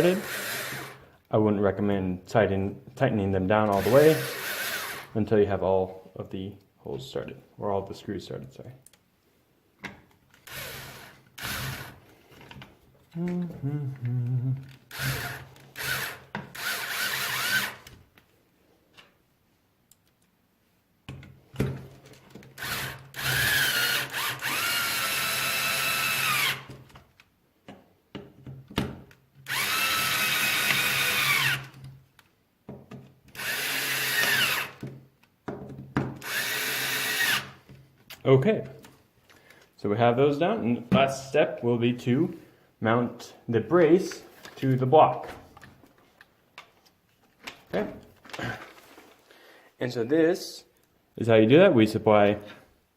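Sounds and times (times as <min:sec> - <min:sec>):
power driver whining: 0:22.6 - 0:26.7.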